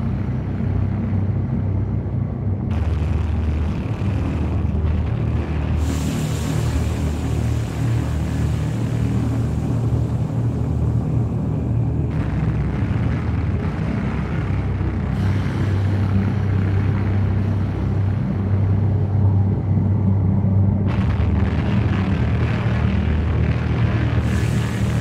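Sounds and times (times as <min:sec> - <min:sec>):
deep rumbling drone: 0:00.0 - 0:25.0
high hiss: 0:05.8 - 0:10.6, 0:24.2 - 0:25.0.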